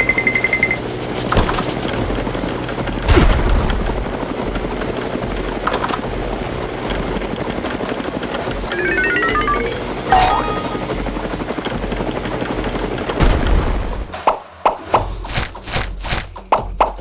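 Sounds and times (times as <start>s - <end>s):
falling tones: 8.7s - 11.1s.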